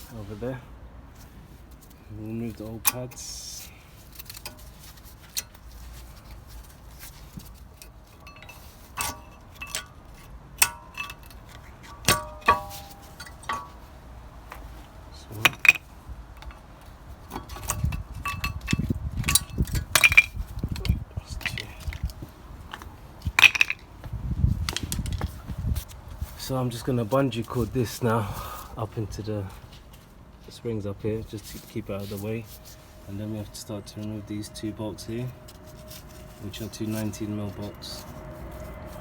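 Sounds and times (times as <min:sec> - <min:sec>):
brake pads scraping and rubbing: 0:00.0 - 0:39.0
metallic clicks and clinks: 0:23.4 - 0:23.9.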